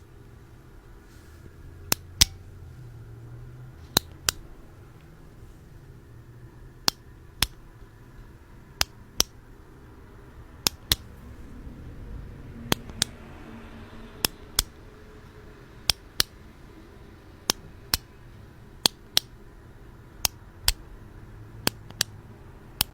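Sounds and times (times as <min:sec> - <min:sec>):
sharp clicks in pairs: 0:01.9 - 0:02.5, 0:03.8 - 0:05.1, 0:06.8 - 0:07.6, 0:08.8 - 0:09.4, 0:10.6 - 0:11.1, 0:12.7 - 0:13.2, 0:14.2 - 0:14.8, 0:15.8 - 0:16.4, 0:17.4 - 0:18.1, 0:18.8 - 0:19.4, 0:20.2 - 0:20.8, 0:21.6 - 0:22.9.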